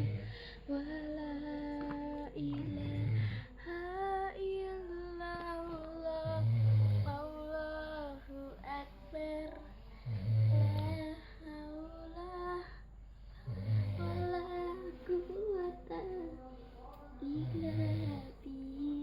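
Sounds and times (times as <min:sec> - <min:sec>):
man snoring deeply: 0:00.0 - 0:00.4, 0:02.5 - 0:03.5, 0:06.2 - 0:07.5, 0:10.0 - 0:11.2, 0:13.4 - 0:15.6, 0:17.2 - 0:18.6
child singing lullaby-like tune: 0:00.6 - 0:09.7, 0:10.5 - 0:12.8, 0:13.8 - 0:19.0.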